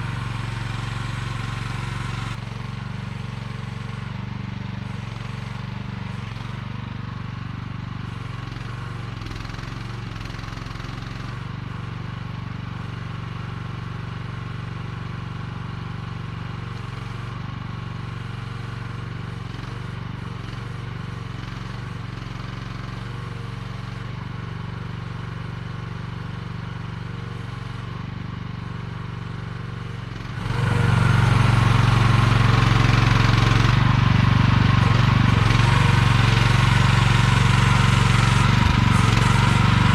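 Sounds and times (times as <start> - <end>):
excavator engine running: 0.0 - 6.5, 30.0 - 39.9.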